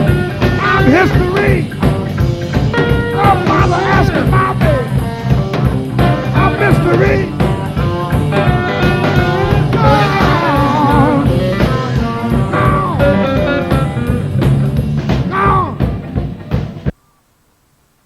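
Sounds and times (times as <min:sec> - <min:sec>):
bending lead guitar line: 0:00.0 - 0:16.9
blues-rock band playing: 0:00.0 - 0:16.9
steady drum beat: 0:00.0 - 0:17.0.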